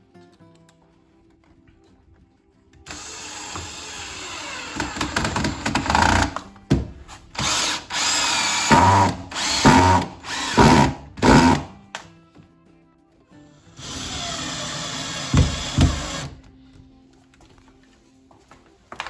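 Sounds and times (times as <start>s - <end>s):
power drill driving screws: 2.9s - 6.4s, 7.4s - 11.8s, 13.8s - 16.4s.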